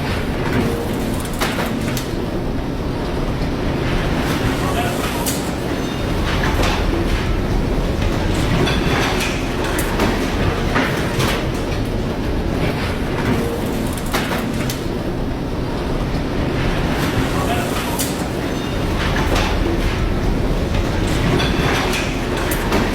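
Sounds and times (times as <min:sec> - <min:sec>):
ship rumble in storm: 0:02.2 - 0:22.9
sharp knocks and rattles: 0:05.3 - 0:14.9, 0:18.0 - 0:22.9.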